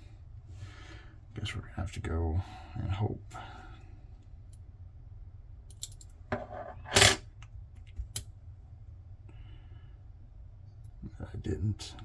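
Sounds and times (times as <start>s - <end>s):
small metal parts clinking: 5.7s - 7.2s.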